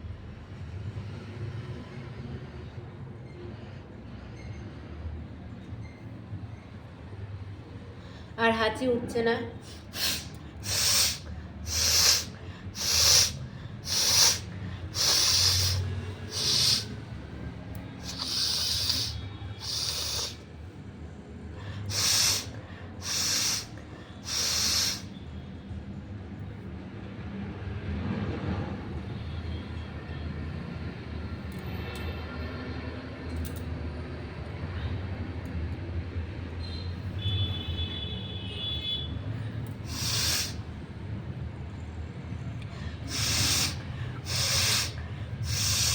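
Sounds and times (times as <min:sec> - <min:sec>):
person snorting and sniffing: 0:09.6 - 0:17.0, 0:17.9 - 0:20.4, 0:21.8 - 0:25.1, 0:39.8 - 0:40.6, 0:42.9 - 0:45.9.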